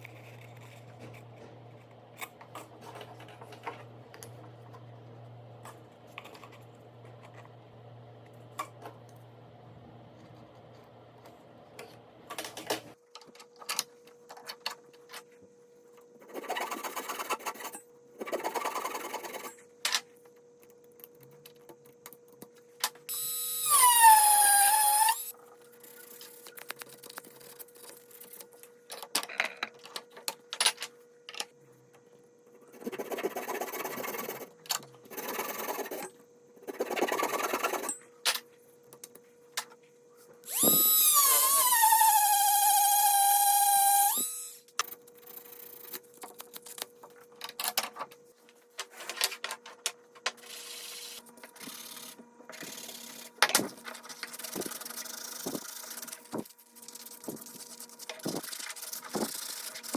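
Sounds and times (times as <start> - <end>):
power tool motor whine: 23.1 - 25.3, 40.5 - 44.6.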